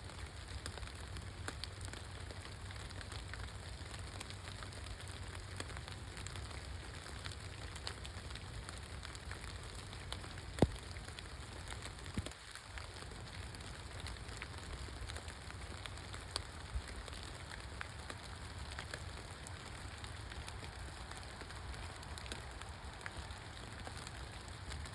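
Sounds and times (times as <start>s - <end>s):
rain falling: 0.0s - 24.9s.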